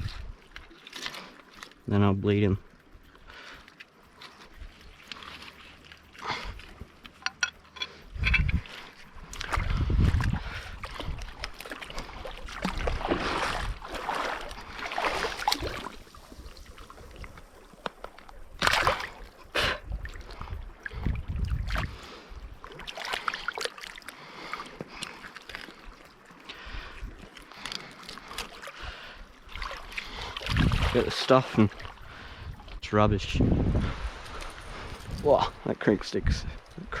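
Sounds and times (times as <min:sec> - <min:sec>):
wind gusts on microphone: 0:00.0 - 0:00.4, 0:08.1 - 0:11.4, 0:18.4 - 0:22.6, 0:30.4 - 0:37.0
water lapping and splashing: 0:00.0 - 0:32.8, 0:33.7 - 0:37.0.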